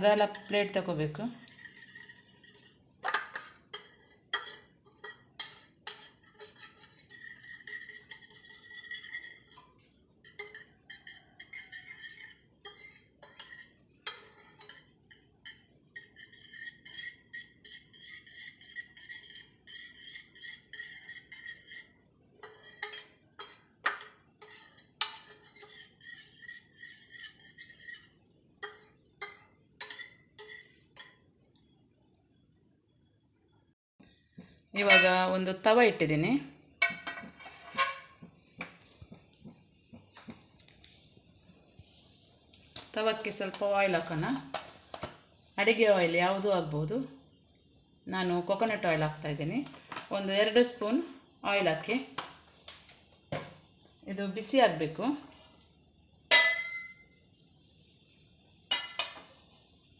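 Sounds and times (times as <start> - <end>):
metal spoon clinking on steel dish: 0.0 - 0.8, 1.4 - 31.2, 34.8 - 35.3, 36.8 - 38.1, 56.3 - 57.0, 58.7 - 59.2.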